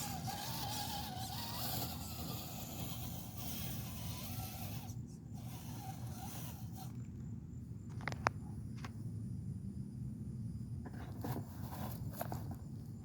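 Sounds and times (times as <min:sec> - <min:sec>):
wavering squeak: 0:00.0 - 0:07.0.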